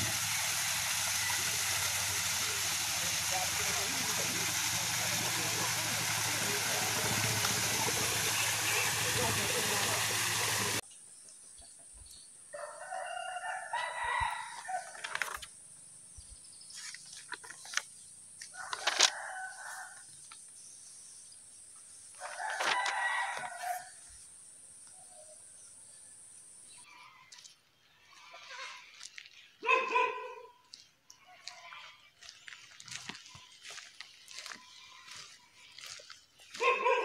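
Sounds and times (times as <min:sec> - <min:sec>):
rush of water: 0:00.0 - 0:10.8
rooster crowing: 0:00.9 - 0:10.8, 0:12.5 - 0:15.0, 0:18.5 - 0:20.0, 0:22.2 - 0:24.0.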